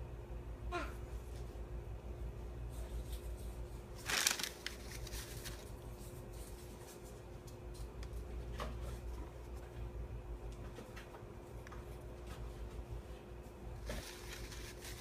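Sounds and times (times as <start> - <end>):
steady low hum: 0.0 - 15.0
scratchy rustle: 13.8 - 15.0.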